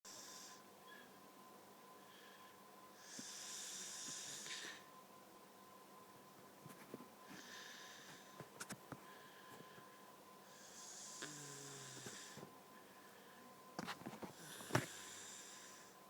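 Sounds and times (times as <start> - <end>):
woman snoring: 3.0 - 4.8, 10.5 - 12.4, 14.4 - 16.0.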